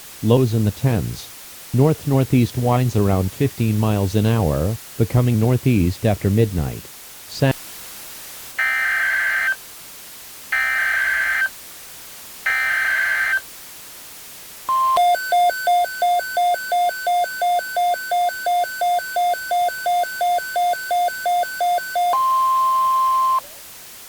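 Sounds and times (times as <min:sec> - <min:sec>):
brief beep: 0:14.7 - 0:23.4
pulsing electronic attention tone: 0:14.7 - 0:23.4
warbling digital data bursts: 0:15.1 - 0:22.3.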